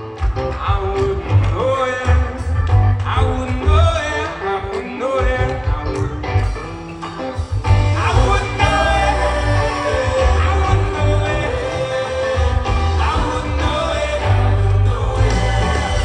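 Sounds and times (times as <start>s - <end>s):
live rock band music: 0.0s - 16.0s
person singing: 7.7s - 16.0s.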